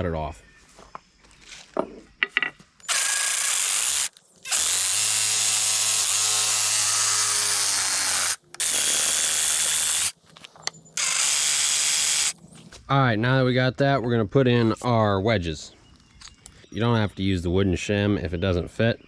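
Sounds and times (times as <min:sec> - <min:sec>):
power saw cutting wood: 0:02.8 - 0:10.1, 0:11.0 - 0:12.4.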